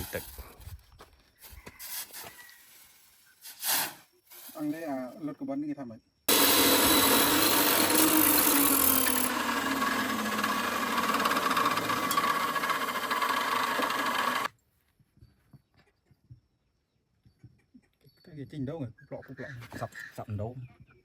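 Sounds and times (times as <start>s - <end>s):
electric power tool running: 6.3s - 14.5s.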